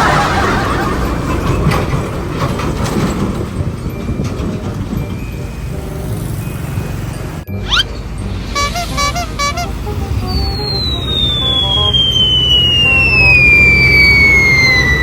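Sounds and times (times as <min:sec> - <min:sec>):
heavy road traffic rumble: 0:00.0 - 0:15.0
short rising whistle: 0:07.5 - 0:15.0.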